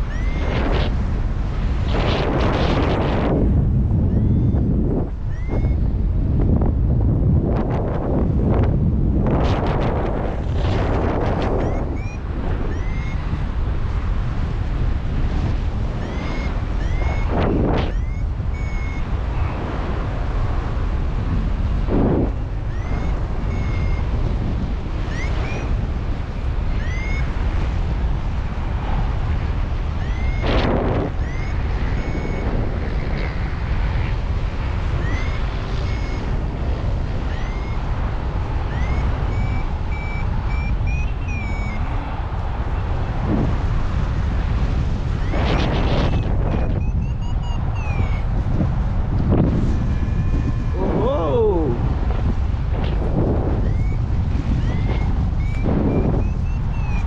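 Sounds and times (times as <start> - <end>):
variometer beeps and chirps: 0.0 - 0.9, 4.0 - 6.0, 10.9 - 13.5, 15.3 - 19.5, 22.2 - 25.9, 26.6 - 27.7, 29.8 - 33.5, 34.9 - 42.2, 45.0 - 51.8, 52.8 - 57.0
wind noise on microphone: 0.0 - 57.0.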